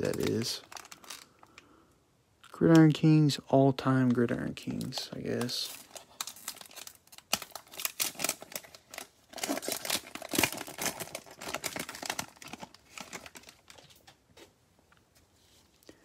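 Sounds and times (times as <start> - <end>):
cellophane wrappers crinkling and tearing: 0.0 - 1.6, 4.0 - 14.2.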